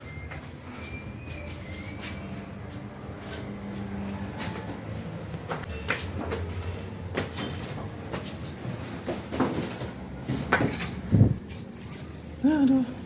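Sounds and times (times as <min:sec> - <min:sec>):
knocks and clatter of handling: 0:05.4 - 0:11.7.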